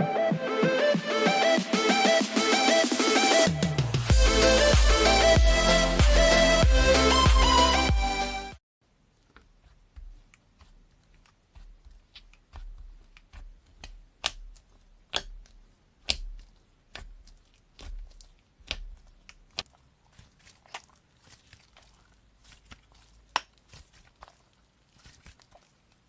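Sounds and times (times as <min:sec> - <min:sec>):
slime squishing with sticky pops: 0:10.1 - 0:26.0.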